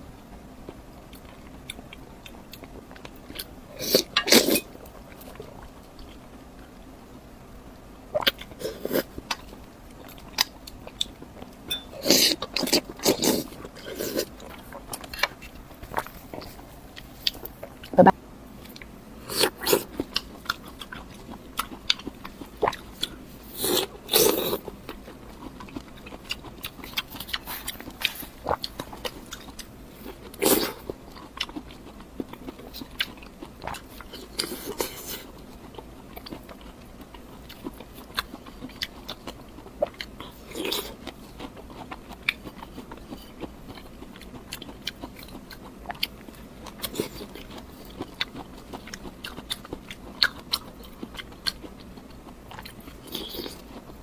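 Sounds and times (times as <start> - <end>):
person chewing crunchy food: 0.7 - 6.2, 8.1 - 54.0
mouth clicks: 17.8 - 18.2.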